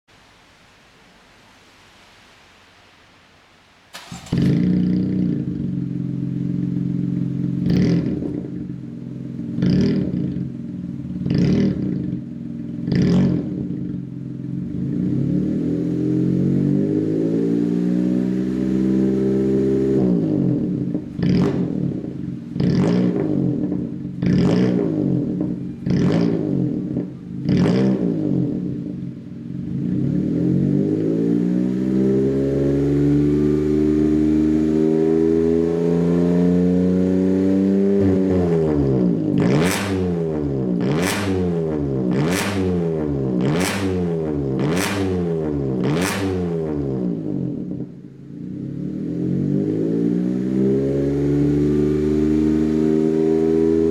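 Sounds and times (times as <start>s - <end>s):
loud deep car engine revving: 4.0s - 53.9s.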